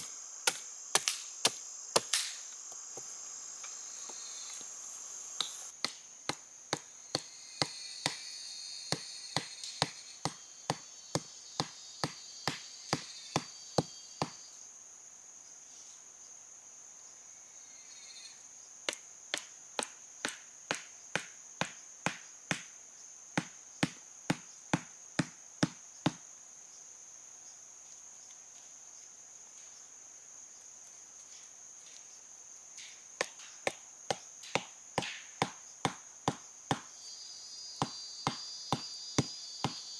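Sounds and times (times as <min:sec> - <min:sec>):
sharp chopping strikes: 0:00.0 - 0:02.4, 0:05.4 - 0:08.3, 0:33.7 - 0:36.9
high-pitched insect drone: 0:00.0 - 0:05.7.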